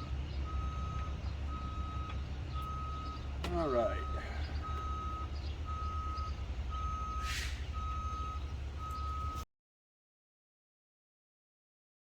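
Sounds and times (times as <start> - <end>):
low engine rumble: 0.0 - 9.4
reversing alarm beeping: 0.4 - 9.4
short hiss: 7.2 - 7.6.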